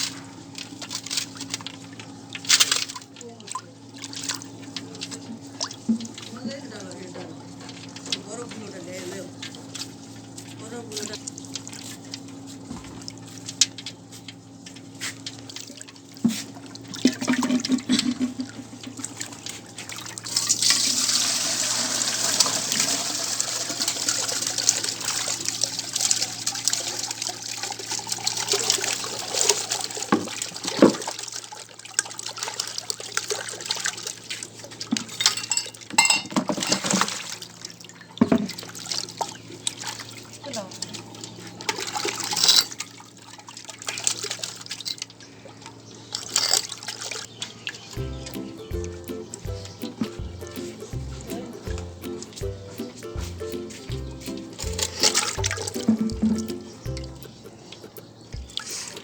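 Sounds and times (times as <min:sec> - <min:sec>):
water drips and knocks: 0:00.0 - 0:08.8, 0:09.4 - 0:45.2, 0:46.2 - 0:59.0
water splashes: 0:00.0 - 0:59.0
water rushing: 0:20.0 - 0:30.7, 0:48.3 - 0:59.0.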